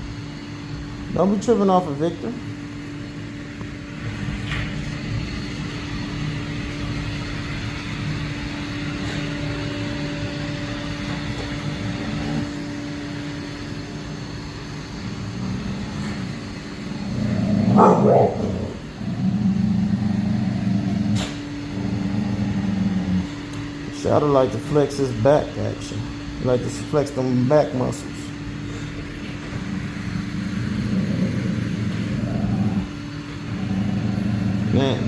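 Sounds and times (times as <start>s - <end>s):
robot vacuum humming: 4.0s - 35.0s
dog growling: 15.3s - 23.4s, 29.5s - 35.0s.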